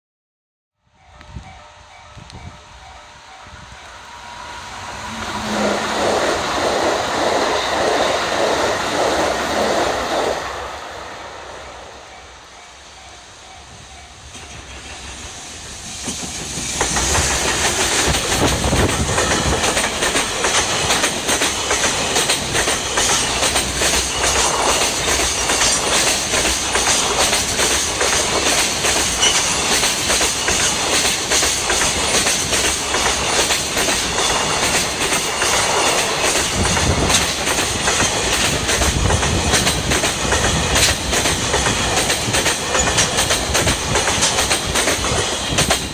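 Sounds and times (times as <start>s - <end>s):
freight train passing: 0.8s - 45.9s
wheels clacking over rail joints: 13.4s - 45.9s.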